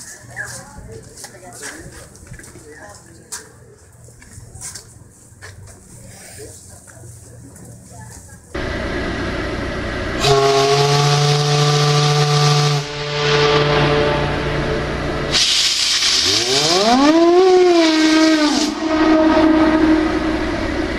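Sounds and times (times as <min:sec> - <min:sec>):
steam hissing: 0:10.1 - 0:20.9
steam whistle chord: 0:10.2 - 0:20.9.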